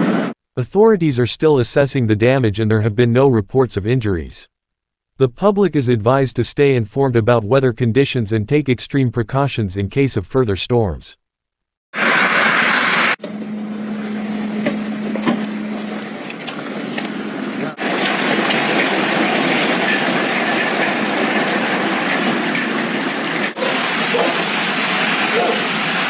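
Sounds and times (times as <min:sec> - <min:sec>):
heavy hail and rain: 0:12.0 - 0:13.2, 0:17.7 - 0:26.0
hailstones striking hard surfaces: 0:17.8 - 0:23.6.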